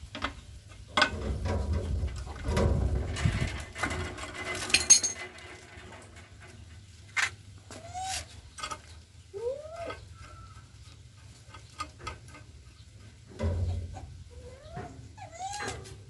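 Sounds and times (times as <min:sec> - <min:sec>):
animal cries rising and falling: 0:07.7 - 0:08.3, 0:09.4 - 0:10.6.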